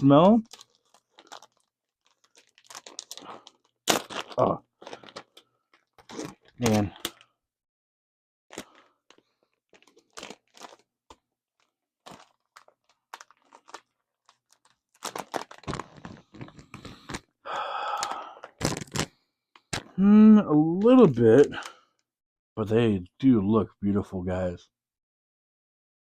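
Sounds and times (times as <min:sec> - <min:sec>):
plastic packaging crinkling: 0:00.0 - 0:07.3, 0:08.5 - 0:17.3, 0:17.9 - 0:19.9.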